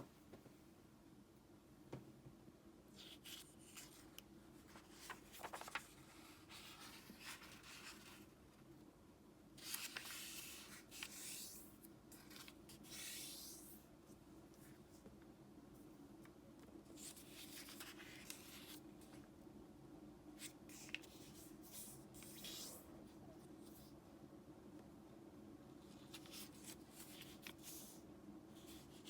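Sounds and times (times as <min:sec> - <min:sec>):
paper rustling as it is folded: 0:02.9 - 0:08.4, 0:09.6 - 0:13.8, 0:16.9 - 0:19.3, 0:20.4 - 0:22.8, 0:25.8 - 0:28.0, 0:28.6 - 0:29.0.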